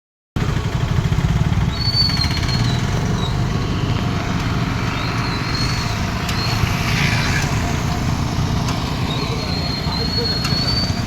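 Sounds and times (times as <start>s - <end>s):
high whistling tone: 1.7s - 3.5s, 4.9s - 6.9s, 9.0s - 11.0s.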